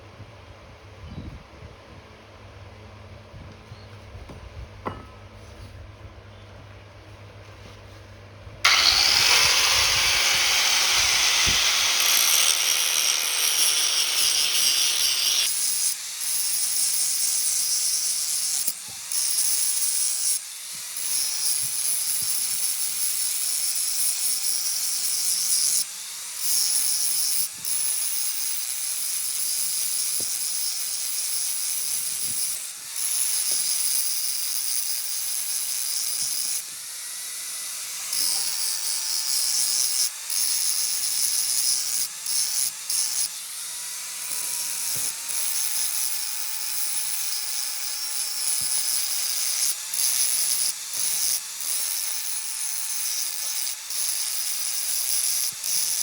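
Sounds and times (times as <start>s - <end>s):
power grinder grinding metal: 8.6s - 56.0s.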